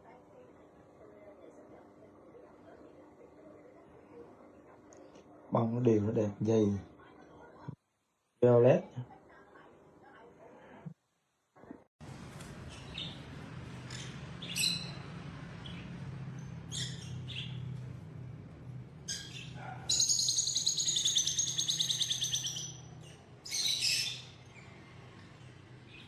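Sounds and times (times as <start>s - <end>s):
steady low hum: 12.0s - 19.9s
bird chirping: 12.6s - 17.9s, 19.0s - 24.9s
bird rattling trill: 19.0s - 22.8s.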